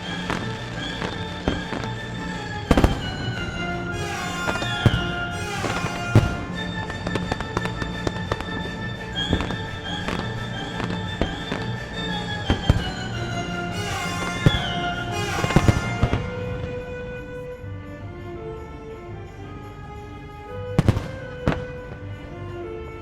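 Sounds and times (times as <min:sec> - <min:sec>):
music with held notes: 0:00.0 - 0:23.0
fireworks bangs and crackle: 0:02.7 - 0:06.6, 0:12.4 - 0:16.4.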